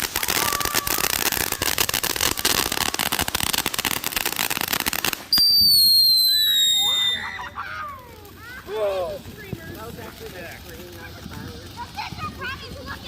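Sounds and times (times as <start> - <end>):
firework crackling hiss: 0.0 - 13.0
falling shrill whistle: 5.3 - 7.4.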